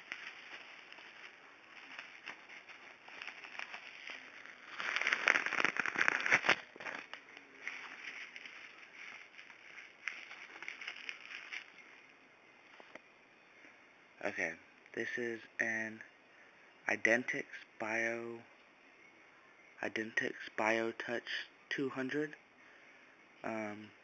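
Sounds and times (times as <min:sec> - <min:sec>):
packaging crinkling: 0:00.0 - 0:12.1.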